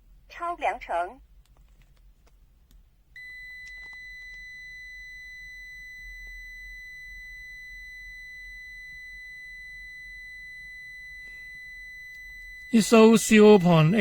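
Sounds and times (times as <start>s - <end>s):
multimeter high-pitched beep: 3.2s - 14.0s.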